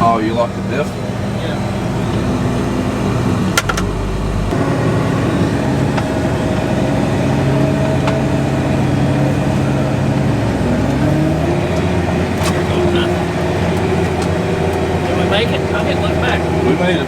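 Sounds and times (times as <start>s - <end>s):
tractor engine running under load: 0.0s - 17.0s.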